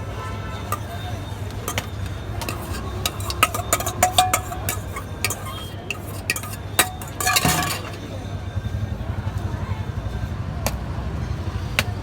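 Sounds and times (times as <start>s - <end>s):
metal spoon clinking steel bowl: 0.6s - 8.1s.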